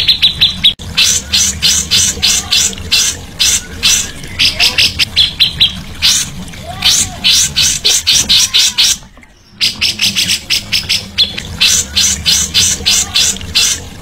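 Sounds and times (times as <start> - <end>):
songbird rasping chatter: 0.0 - 13.9.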